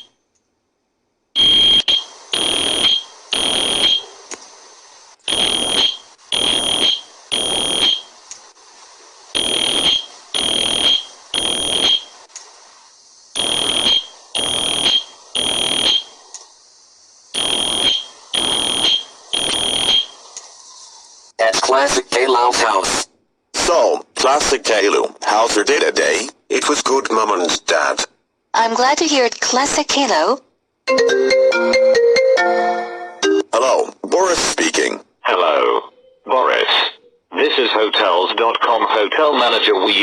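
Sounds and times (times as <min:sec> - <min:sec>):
fire alarm beeping: 0:01.4 - 0:04.1, 0:05.3 - 0:08.1, 0:09.4 - 0:12.2, 0:13.4 - 0:16.2, 0:17.4 - 0:20.2.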